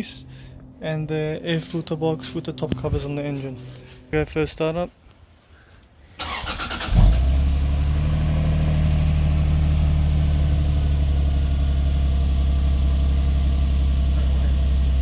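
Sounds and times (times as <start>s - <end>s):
car engine revving and idling: 6.4s - 15.0s.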